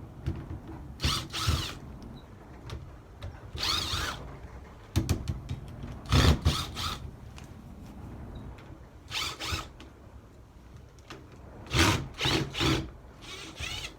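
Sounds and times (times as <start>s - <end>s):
power drill bursts: 1.0s - 1.8s, 3.6s - 4.2s, 6.1s - 7.0s, 9.1s - 9.7s, 11.7s - 13.9s.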